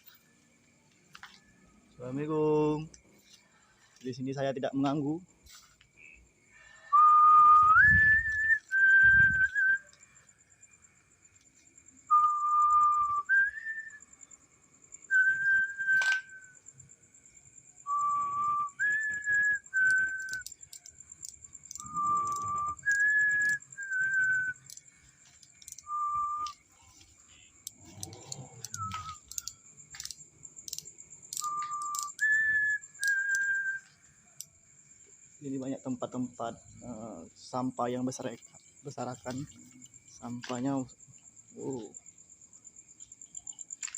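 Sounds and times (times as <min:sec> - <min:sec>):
whistled notes: 0:06.8 - 0:10.2, 0:12.1 - 0:14.1, 0:15.1 - 0:16.6, 0:17.8 - 0:20.8, 0:21.7 - 0:24.8, 0:25.6 - 0:30.1, 0:30.7 - 0:34.0
light clicks: 0:24.6 - 0:26.6, 0:27.6 - 0:32.3, 0:33.0 - 0:33.5.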